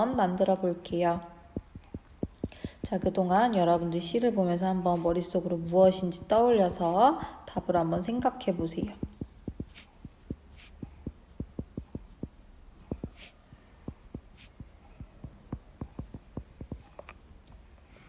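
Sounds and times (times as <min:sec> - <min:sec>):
low steady hum: 0:00.0 - 0:18.0
pen scratching strokes: 0:01.6 - 0:03.0, 0:04.8 - 0:07.2, 0:08.0 - 0:17.2
pen tapping on writing surface: 0:08.8 - 0:17.1.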